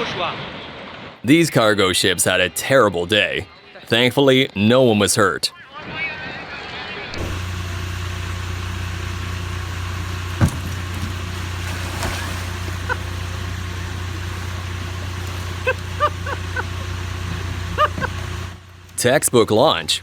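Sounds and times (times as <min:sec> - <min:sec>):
motor humming: 0:07.1 - 0:20.0.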